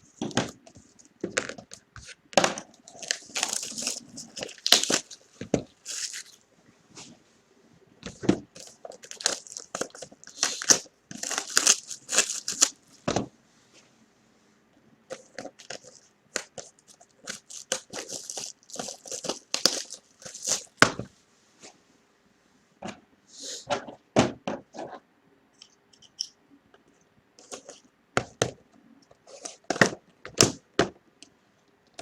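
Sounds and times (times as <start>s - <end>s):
plastic shrink-wrap crackling: 2.8s - 6.4s, 8.6s - 13.0s, 15.5s - 20.8s.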